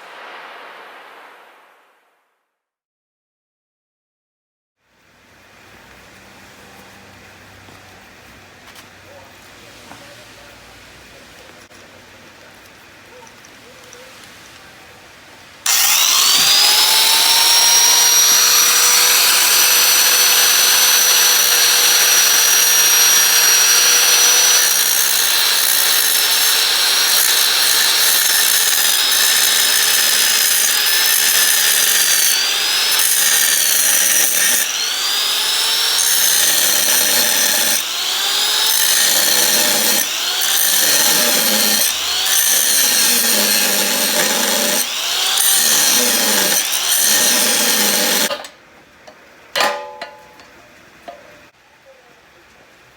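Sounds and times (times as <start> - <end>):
electric power tool whining: 15.6 - 48.5.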